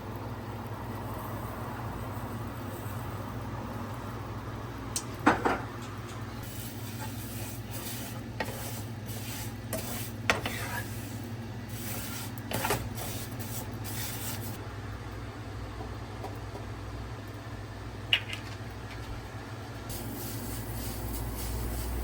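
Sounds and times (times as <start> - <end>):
steady low hum: 0.0 - 22.0
utensil stirring and scraping pot: 6.4 - 14.6, 19.9 - 22.0.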